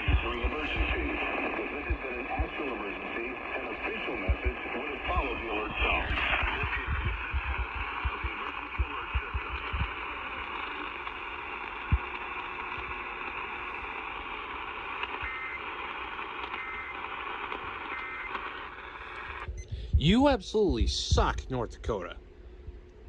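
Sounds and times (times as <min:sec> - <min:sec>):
radio static hiss: 0:00.0 - 0:22.2
digital data bursts: 0:15.2 - 0:17.1.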